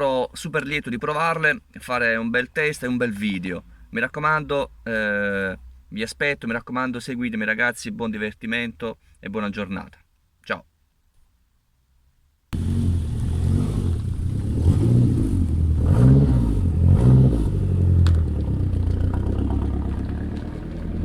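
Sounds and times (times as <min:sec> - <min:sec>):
car engine revving: 0:12.6 - 0:21.0.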